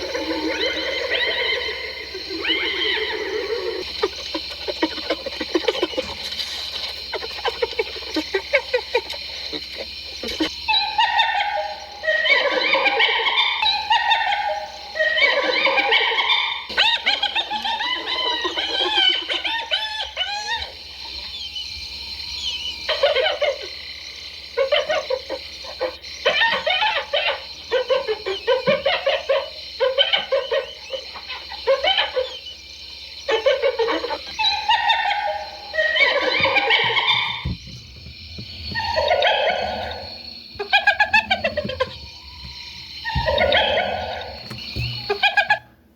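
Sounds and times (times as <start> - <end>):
hyenas laughing and cackling: 0.0 - 45.9.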